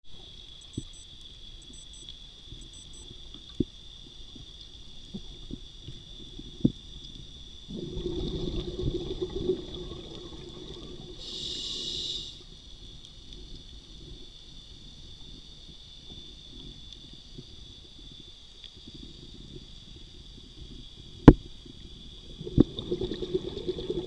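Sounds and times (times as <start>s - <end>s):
short hiss: 11.2s - 12.5s.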